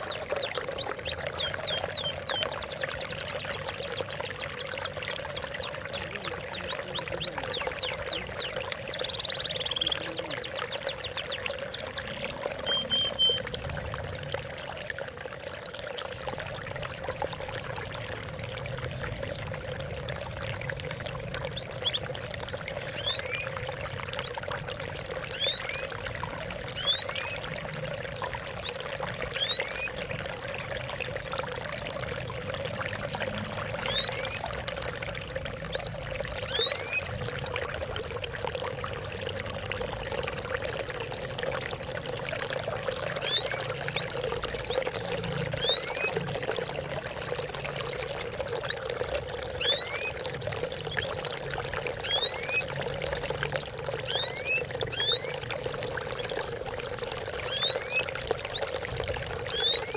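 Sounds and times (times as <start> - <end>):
songbirds chirping: 0.0 - 13.7, 17.2 - 32.2, 33.1 - 37.2, 57.4 - 59.9
water trickling and pouring: 0.0 - 59.9.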